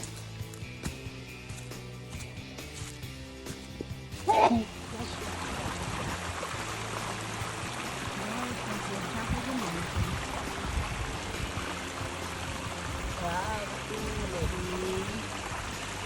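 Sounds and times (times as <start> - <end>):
wind rushing over microphone: 9.1 - 11.8.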